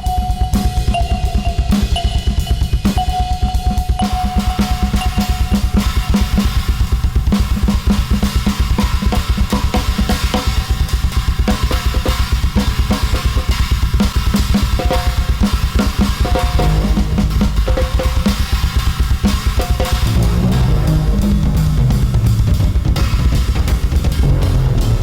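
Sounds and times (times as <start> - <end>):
fast drum kit playing: 0.0 - 25.0.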